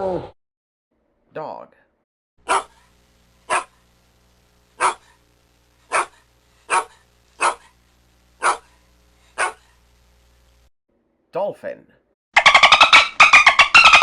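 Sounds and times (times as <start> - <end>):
dog barking: 2.4 - 2.8, 3.5 - 3.8, 4.8 - 5.2, 5.9 - 7.8, 8.4 - 8.8, 9.4 - 9.8.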